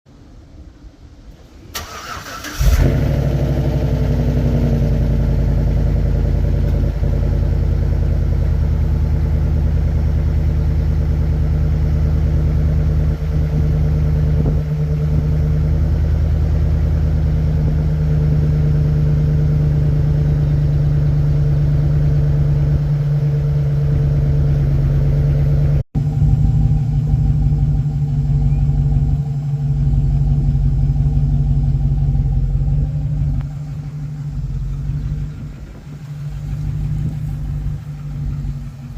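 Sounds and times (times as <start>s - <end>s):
engine cranking and idling: 1.3s - 38.9s
engine lifter tick: 6.6s - 7.0s, 33.1s - 38.9s.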